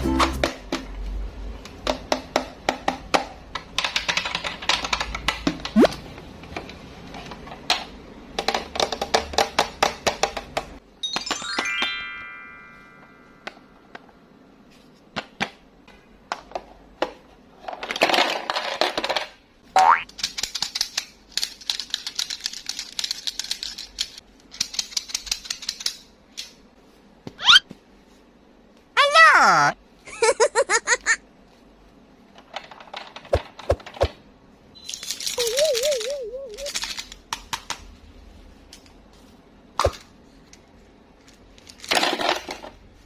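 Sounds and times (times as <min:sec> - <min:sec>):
falling chime-like notes: 0:11.0 - 0:13.5
hard candies clattering on plastic: 0:41.6 - 0:42.8.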